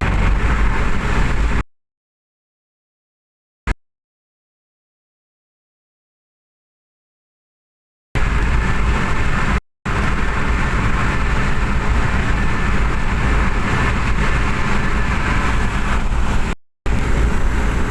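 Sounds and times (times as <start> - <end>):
engine running loud: 0.0 - 1.6, 8.2 - 17.9.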